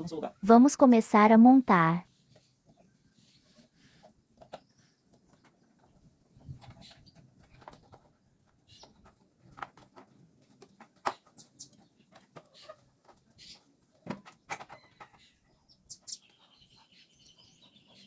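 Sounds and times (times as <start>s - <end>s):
plastic parts clicking and tapping: 4.4s - 13.2s.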